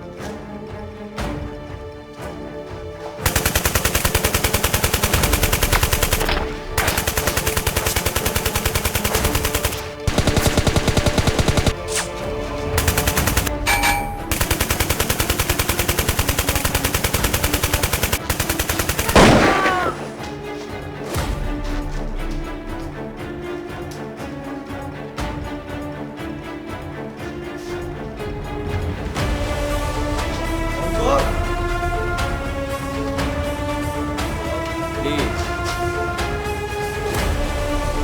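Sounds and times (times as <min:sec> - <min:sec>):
background music: 0:00.0 - 0:38.0
automatic gunfire bursts: 0:03.3 - 0:11.9, 0:12.8 - 0:20.1.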